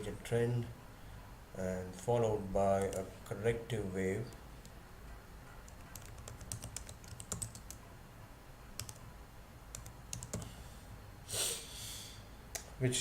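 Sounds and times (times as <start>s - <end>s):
keyboard keys clicking: 5.6s - 7.8s, 8.8s - 9.0s, 9.7s - 10.5s.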